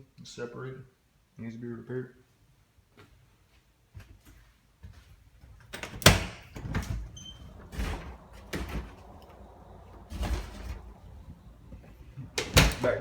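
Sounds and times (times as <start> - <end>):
door scraping on linoleum floor: 5.7 - 13.0.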